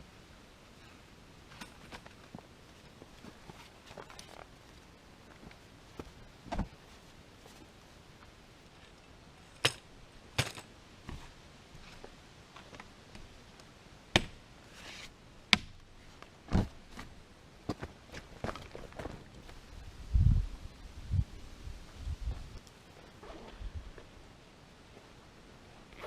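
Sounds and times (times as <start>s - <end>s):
background hiss: 0.0s - 26.0s
camping gear knocks and clacks: 1.5s - 4.5s, 5.3s - 6.9s, 9.6s - 13.3s, 15.6s - 17.1s.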